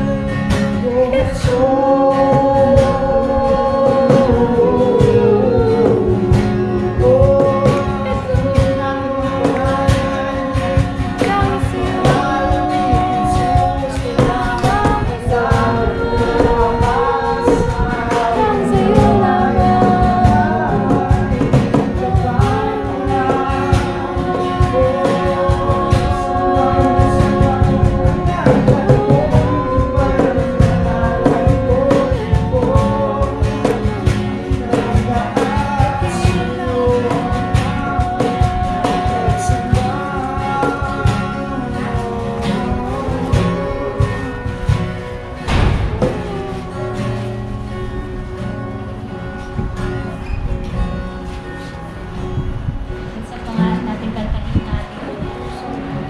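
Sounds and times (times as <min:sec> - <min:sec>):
steady drum beat: 0:00.0 - 0:48.5
person singing worship song: 0:00.0 - 0:50.4
guitar: 0:00.0 - 0:56.0.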